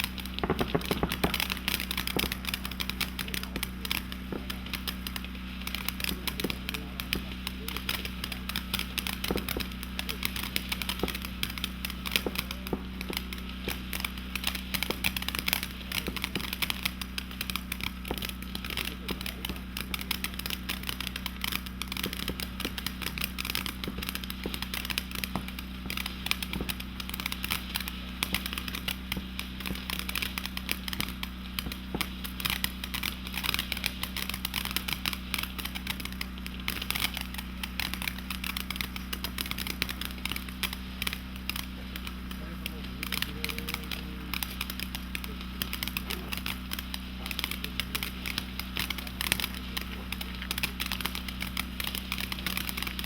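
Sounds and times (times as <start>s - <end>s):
firework fountain crackling: 0.0s - 53.0s.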